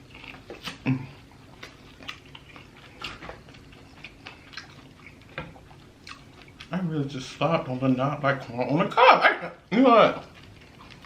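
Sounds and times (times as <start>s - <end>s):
wet lip smacks and chewing: 0.0s - 6.7s.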